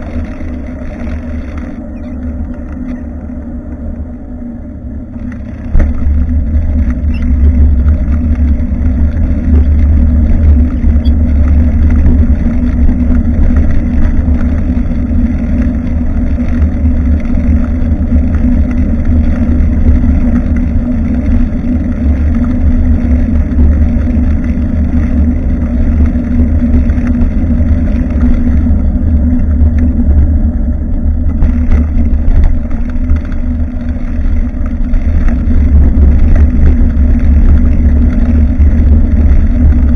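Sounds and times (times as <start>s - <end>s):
road noise: 0.0s - 39.9s
wind rumble on microphone: 0.0s - 39.9s.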